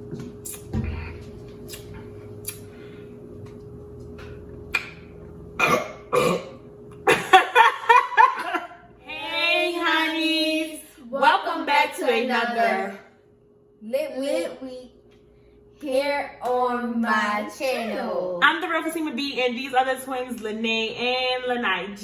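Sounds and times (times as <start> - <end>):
burps: 5.6 - 6.6.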